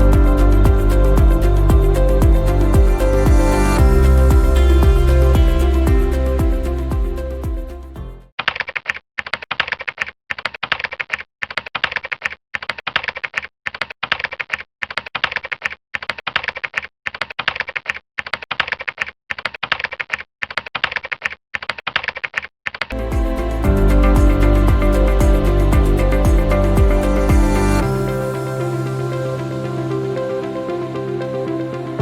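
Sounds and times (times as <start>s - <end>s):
music: 0.0s - 8.3s, 23.0s - 32.0s
rapid keyboard typing: 8.4s - 27.6s.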